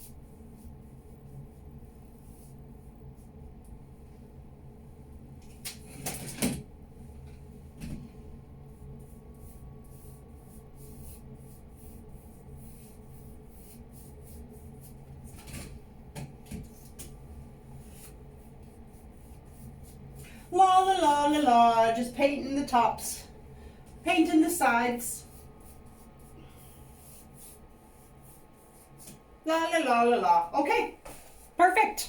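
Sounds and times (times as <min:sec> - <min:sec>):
paintbrush rubbing on canvas: 0:00.0 - 0:03.4, 0:08.7 - 0:15.3, 0:16.7 - 0:20.2, 0:23.9 - 0:29.9
steady low hum: 0:00.0 - 0:32.0.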